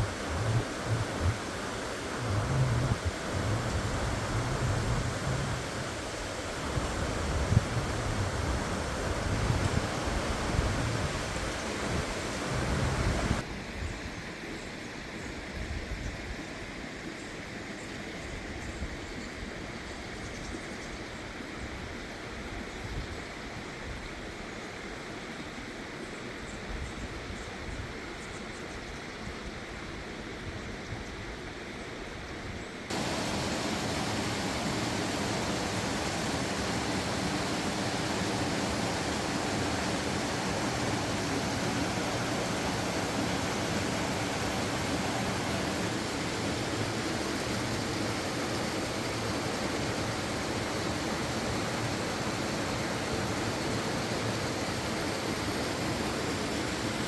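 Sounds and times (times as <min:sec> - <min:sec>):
stream rushing over rocks: 0:00.0 - 0:13.5, 0:32.9 - 0:57.0.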